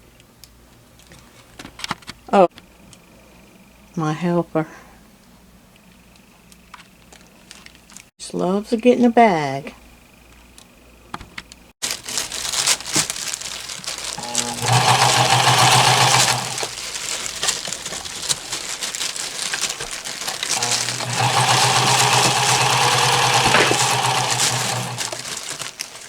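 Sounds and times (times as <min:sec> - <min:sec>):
sewing machine stitching: 0:14.1 - 0:18.4, 0:19.8 - 0:26.0.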